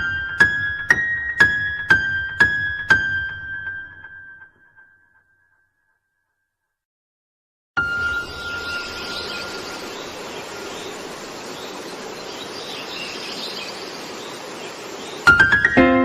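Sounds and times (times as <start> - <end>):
background music: 0.0 - 5.4, 15.3 - 16.0
outdoor ambience with faint chirping: 7.8 - 15.8.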